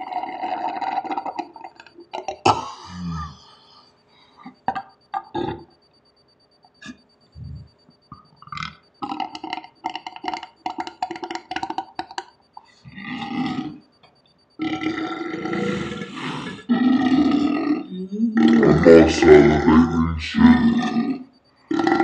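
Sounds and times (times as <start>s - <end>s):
man burping: 0.0s - 3.6s, 4.4s - 5.7s, 8.1s - 12.3s, 14.6s - 22.0s.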